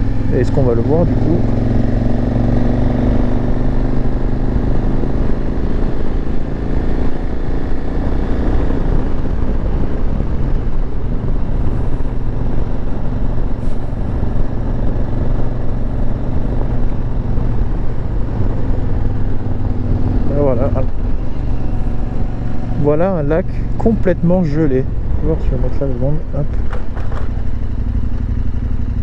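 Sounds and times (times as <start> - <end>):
motorcycle engine running: 0.0 - 29.0
wind noise on microphone: 1.5 - 22.8.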